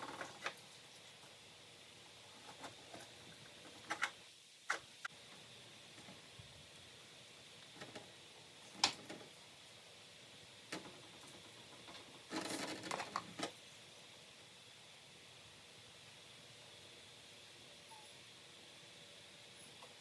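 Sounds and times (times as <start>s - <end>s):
small knocks and clatter: 0.0s - 1.4s, 7.7s - 9.4s, 10.7s - 13.6s.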